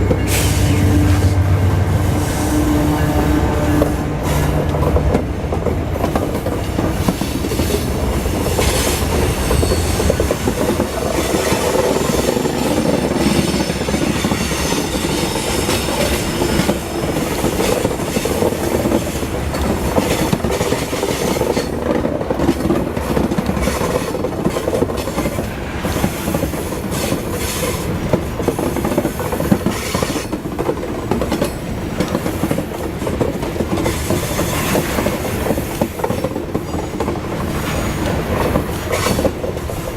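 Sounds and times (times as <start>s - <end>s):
freight train wheels rumbling: 0.0s - 39.9s
train wheel squeal: 8.6s - 19.3s.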